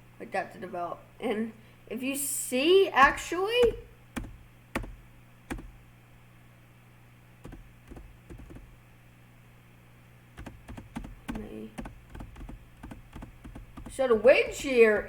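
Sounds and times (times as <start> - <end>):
low steady hum: 0.0 - 15.0
computer keyboard and mouse clicks: 3.0 - 5.7, 7.4 - 8.7, 10.4 - 14.0.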